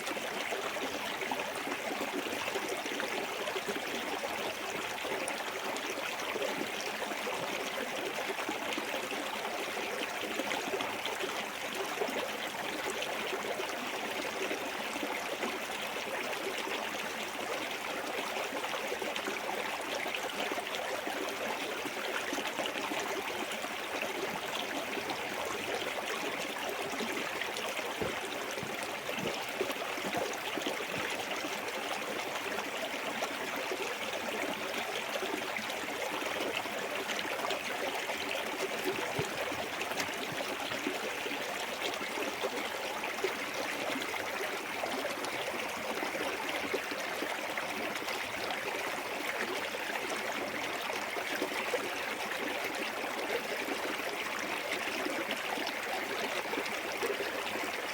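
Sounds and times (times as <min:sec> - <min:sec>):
water splashing and gurgling: 0:37.1 - 0:41.7.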